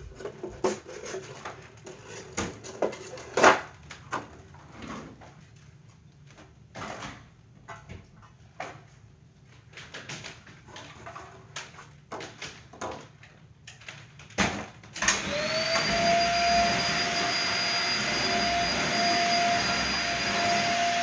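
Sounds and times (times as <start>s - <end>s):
vacuum cleaner motor whine: 15.0s - 21.0s.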